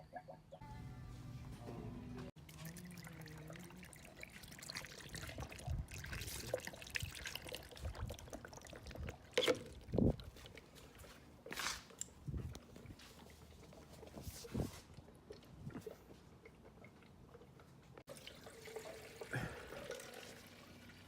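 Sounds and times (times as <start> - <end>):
water glugging: 2.4 - 10.7
water trickling and gurgling: 2.4 - 11.1, 12.3 - 21.0.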